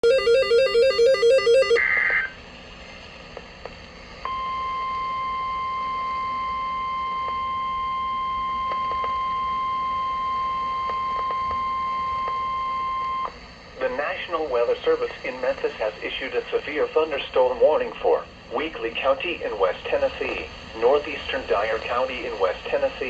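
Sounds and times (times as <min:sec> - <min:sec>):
steady high alarm tone: 0:00.0 - 0:01.8.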